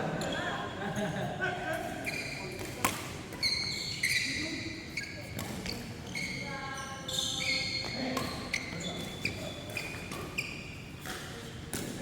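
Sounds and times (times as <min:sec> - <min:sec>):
shoes squeaking on court floor: 0:02.0 - 0:12.0
rackets hitting shuttlecock: 0:11.0 - 0:12.0.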